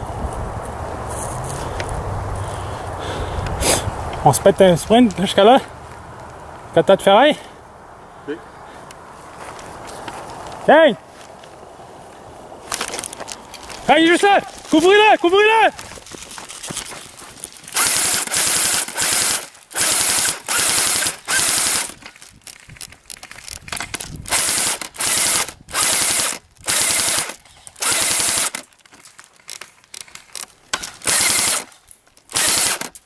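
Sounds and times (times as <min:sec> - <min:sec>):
airsoft rifle firing bursts: 0:17.8 - 0:21.9, 0:24.4 - 0:28.6, 0:31.0 - 0:31.7, 0:32.3 - 0:32.9.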